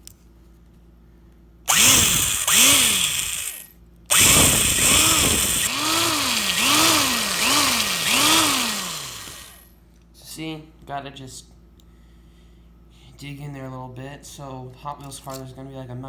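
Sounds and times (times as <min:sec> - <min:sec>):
power drill drilling into metal: 0:01.7 - 0:09.6.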